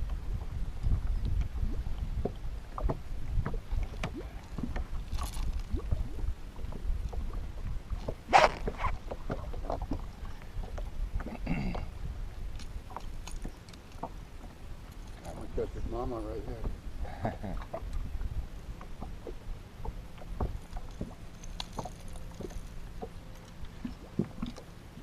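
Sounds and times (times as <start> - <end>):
wind rumbling on microphone: 0.0 - 25.0.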